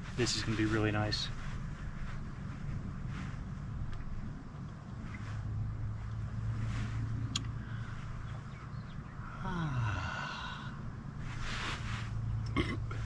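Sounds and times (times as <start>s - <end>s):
steady low hum: 0.0s - 13.0s
man sighing ahh: 9.3s - 10.8s.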